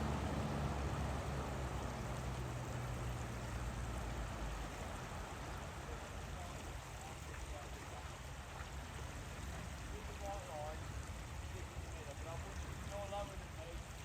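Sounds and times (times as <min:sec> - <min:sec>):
low vehicle engine hum: 0:00.0 - 0:05.7
rushing floodwater: 0:00.0 - 0:14.0.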